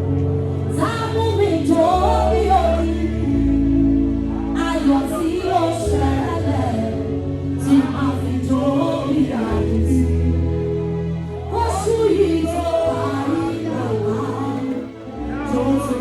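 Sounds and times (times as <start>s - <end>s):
gospel singing with band: 0.0s - 16.0s
low bass notes: 0.0s - 16.0s.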